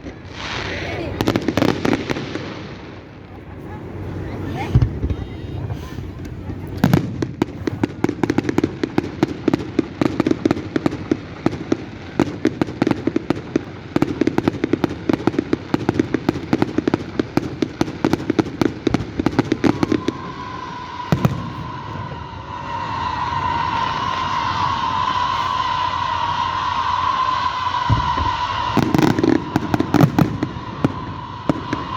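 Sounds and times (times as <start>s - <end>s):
firework bang: 0.0s - 31.9s
fireworks crackling pops: 0.0s - 31.9s
steady high tone: 19.6s - 31.9s.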